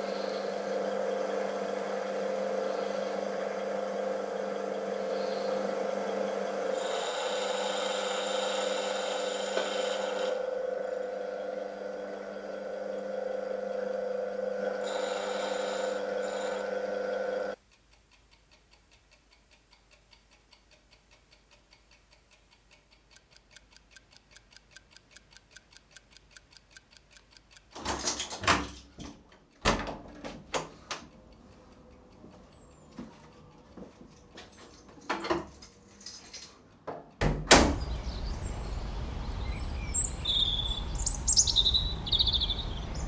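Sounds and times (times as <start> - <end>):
steady drone of held tones: 0.0 - 17.6, 37.6 - 43.0
mechanical watch ticking: 0.0 - 27.8.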